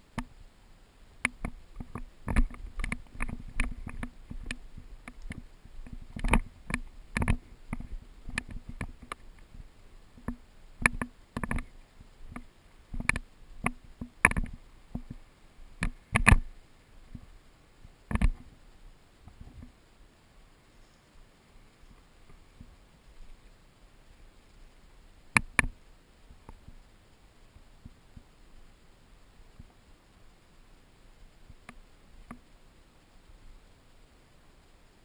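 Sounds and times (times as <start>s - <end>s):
sharp clicks and knocks: 1.2s - 9.5s, 10.2s - 11.7s, 12.3s - 15.2s, 15.8s - 16.5s, 18.1s - 18.5s, 25.3s - 25.8s.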